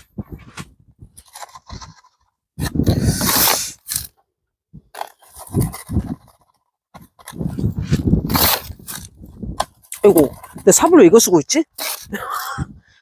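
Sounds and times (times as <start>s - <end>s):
wind buffeting microphone: 7.4s - 10.9s.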